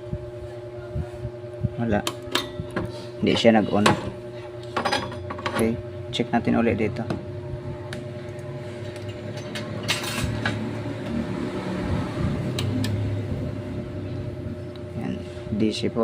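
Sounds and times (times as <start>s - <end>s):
electrical hum: 0.0s - 16.0s.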